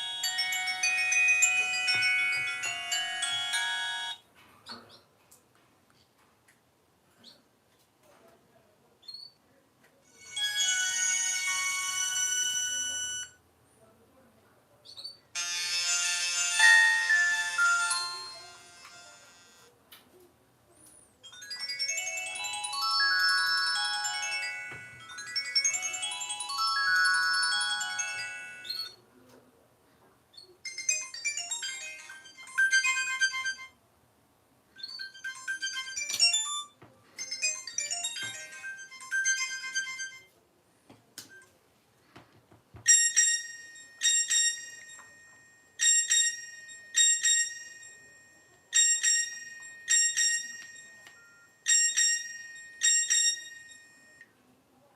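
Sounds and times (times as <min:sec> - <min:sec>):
bell-like phone ring: 0:00.0 - 0:04.2, 0:10.1 - 0:13.4, 0:15.4 - 0:19.7, 0:21.2 - 0:29.0, 0:30.6 - 0:33.8, 0:34.8 - 0:40.3, 0:42.8 - 0:54.3
mobile phone ringtone melody: 0:00.0 - 0:04.3, 0:10.1 - 0:13.4, 0:15.4 - 0:19.7, 0:21.2 - 0:29.0, 0:30.6 - 0:33.8, 0:34.8 - 0:40.4, 0:42.9 - 0:54.3.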